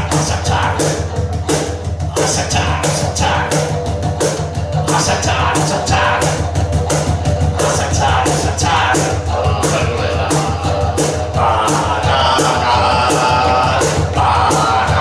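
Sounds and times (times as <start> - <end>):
drum hits: 0.0 - 15.0
live rock band playing: 0.0 - 15.0
sustained pitched line: 0.0 - 15.0.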